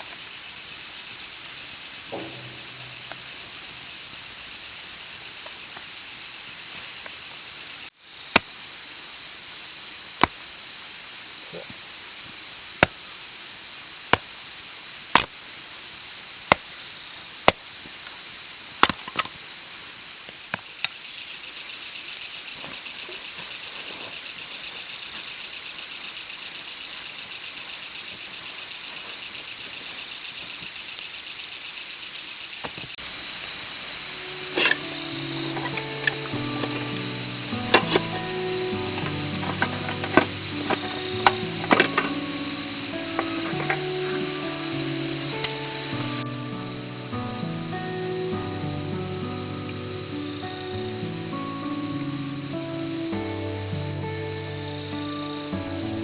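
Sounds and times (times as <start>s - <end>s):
high insect chirring: 0.0s - 7.8s, 33.0s - 56.0s
campfire crackling pops: 2.1s - 4.6s, 33.0s - 54.9s.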